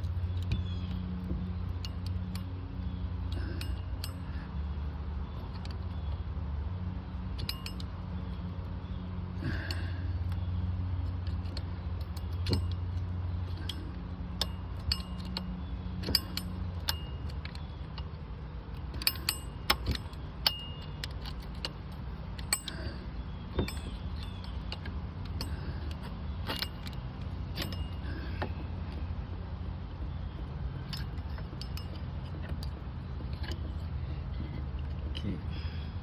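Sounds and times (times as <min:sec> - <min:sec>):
steady low hum: 0:00.0 - 0:36.0
hand tools clinking on metal: 0:13.5 - 0:18.1, 0:18.8 - 0:28.7, 0:30.8 - 0:35.8.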